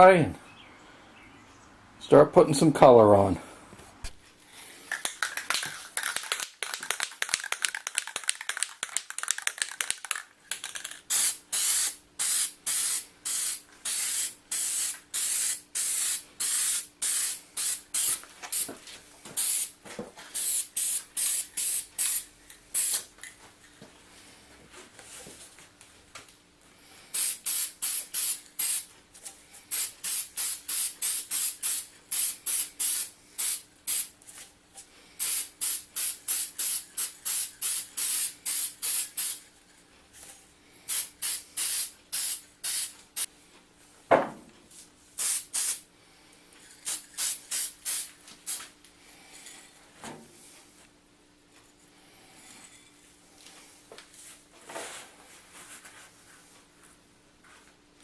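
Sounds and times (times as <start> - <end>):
spray paint hissing bursts: 11.1 - 18.7, 19.4 - 19.7, 20.4 - 23.1, 27.1 - 28.9, 29.7 - 34.2, 35.2 - 39.4, 40.9 - 43.3, 45.2 - 45.8, 46.8 - 48.6.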